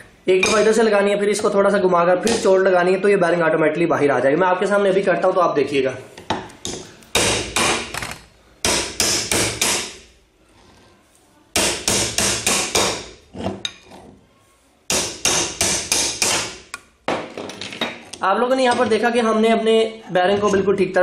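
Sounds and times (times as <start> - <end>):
hammer striking metal pliers: 8.6 - 10.0, 11.6 - 13.1.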